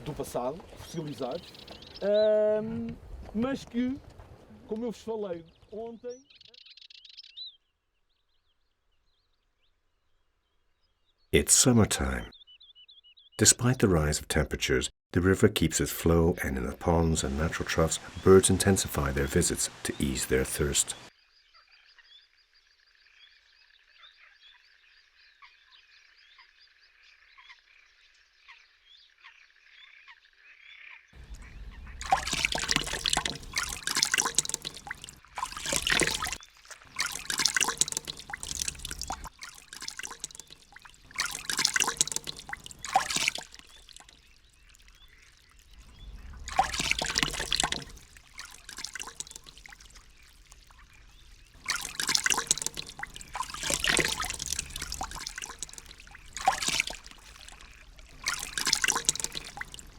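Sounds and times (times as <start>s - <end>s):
birds splashing in water: 0.0s - 2.3s, 15.9s - 21.1s, 31.2s - 59.9s.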